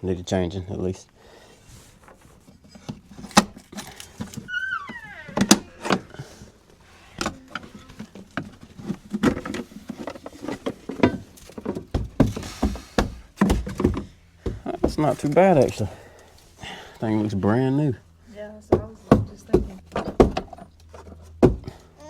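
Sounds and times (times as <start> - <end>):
falling squeak: 4.3 - 6.3
knocks and clicks of handling: 5.3 - 6.2, 7.2 - 15.8.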